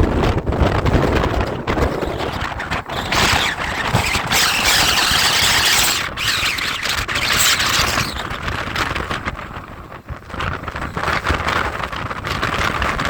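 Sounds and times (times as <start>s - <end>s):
strong wind gusting on microphone: 0.0s - 13.0s.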